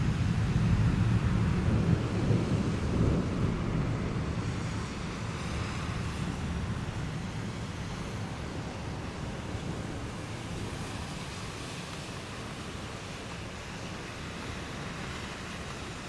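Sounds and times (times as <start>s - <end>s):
thunder rumble: 0.0s - 10.6s.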